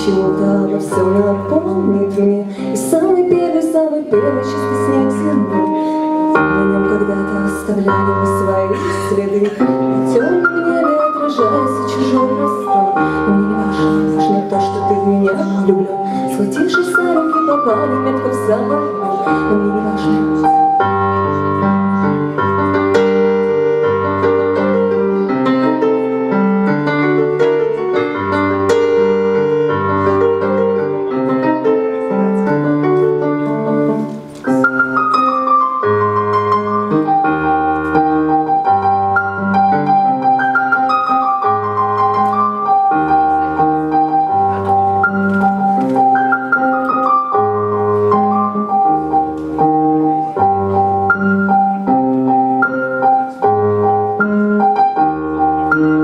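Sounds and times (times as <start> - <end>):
instrumental keyboard music: 0.0 - 56.0.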